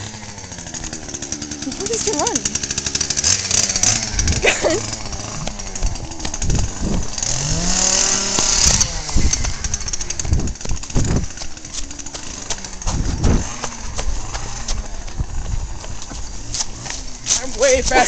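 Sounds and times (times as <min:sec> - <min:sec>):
electric chainsaw motor whining: 0:00.0 - 0:18.0
people running footsteps: 0:08.2 - 0:18.0.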